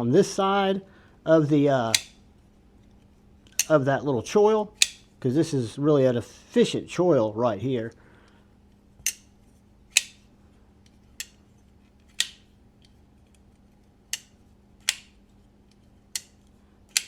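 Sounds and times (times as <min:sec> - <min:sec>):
folding knife blade clicking: 0:01.9 - 0:02.2, 0:03.4 - 0:03.8, 0:04.8 - 0:05.1, 0:09.0 - 0:09.3, 0:09.9 - 0:12.5, 0:14.1 - 0:15.2, 0:16.1 - 0:17.0.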